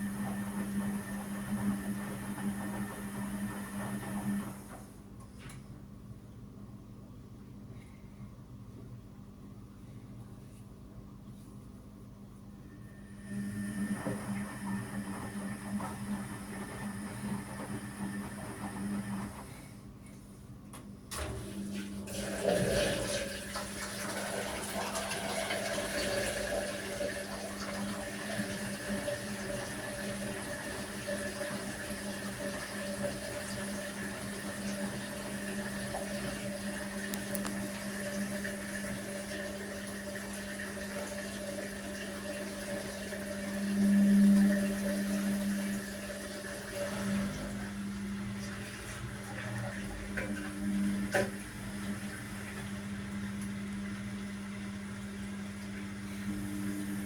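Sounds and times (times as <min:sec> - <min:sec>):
drain pump humming: 0:00.0 - 0:05.6, 0:12.6 - 0:57.0.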